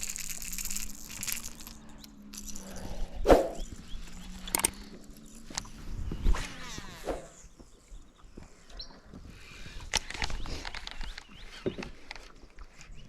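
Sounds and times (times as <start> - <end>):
low hum: 0.0 - 8.1.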